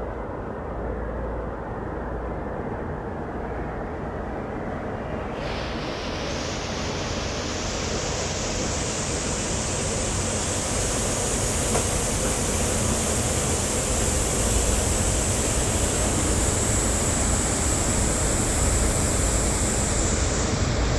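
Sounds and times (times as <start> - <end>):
boat engine: 5.2 - 20.9
water rushing: 5.3 - 20.9
wind noise: 5.4 - 20.9.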